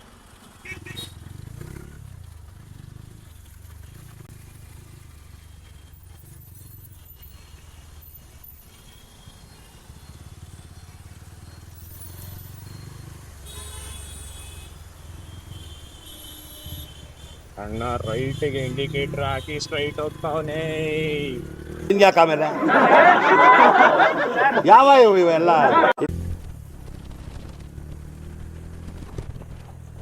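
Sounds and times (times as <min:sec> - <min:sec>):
motorcycle engine at low revs: 0:00.0 - 0:08.0, 0:17.7 - 0:21.9, 0:26.1 - 0:30.0.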